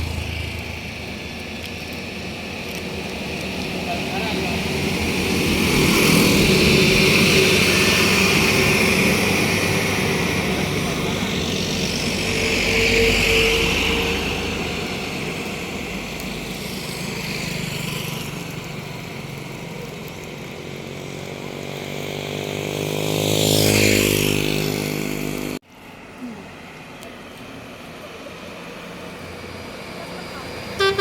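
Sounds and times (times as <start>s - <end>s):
road traffic passing: 0.0s - 31.0s.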